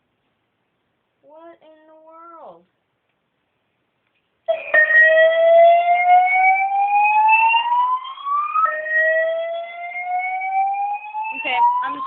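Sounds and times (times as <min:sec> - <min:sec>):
fire alarm rising whoop tone: 0:04.5 - 0:12.0.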